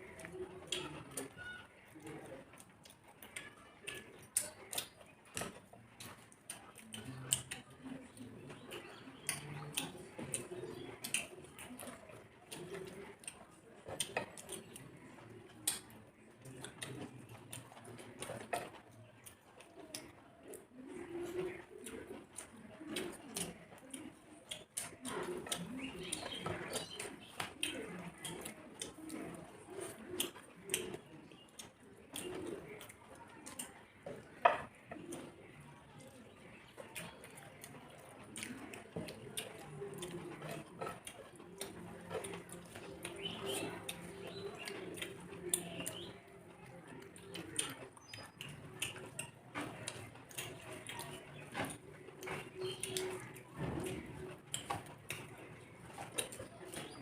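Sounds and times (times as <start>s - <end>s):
pigeon cooing: 0.0s - 57.0s
person chewing: 47.2s - 57.0s.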